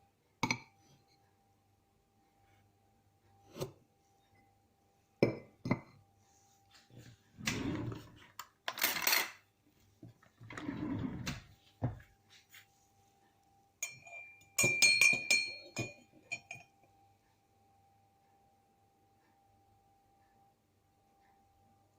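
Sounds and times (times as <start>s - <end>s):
utensil clinking against dish: 13.8s - 16.7s.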